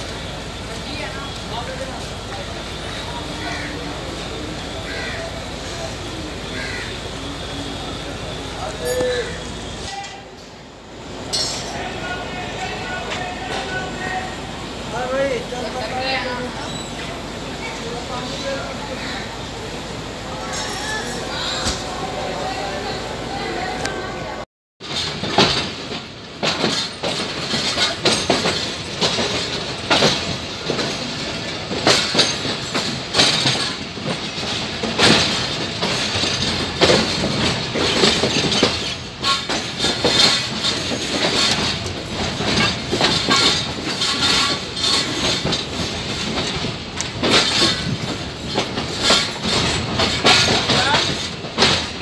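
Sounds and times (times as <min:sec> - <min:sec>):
train wheels clickety-clack: 0:24.8 - 0:52.0.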